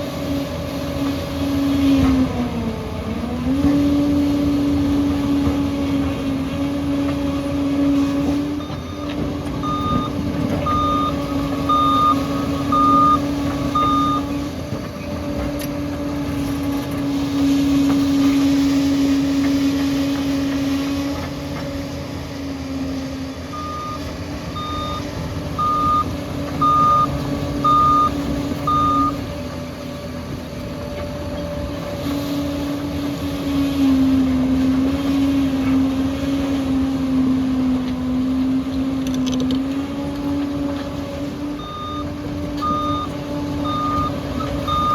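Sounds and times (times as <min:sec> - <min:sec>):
bulldozer diesel engine running: 0:00.0 - 0:44.9
reversing alarm beeping: 0:08.6 - 0:14.4, 0:23.5 - 0:29.3, 0:41.6 - 0:44.9.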